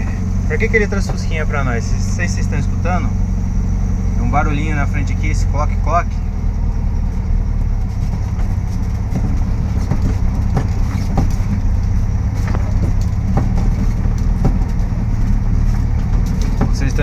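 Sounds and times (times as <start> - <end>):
knocks from car front end: 0.0 - 3.4, 7.6 - 17.0
car engine running: 0.0 - 17.0.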